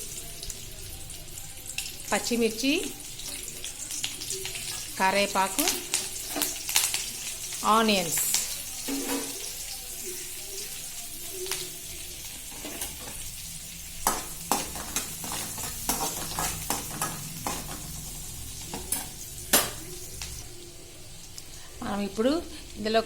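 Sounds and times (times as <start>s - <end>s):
vegetables sizzling in hot oil: 0.0s - 23.0s
spoon scraping against pan: 8.3s - 9.6s, 12.3s - 13.4s, 14.0s - 20.5s.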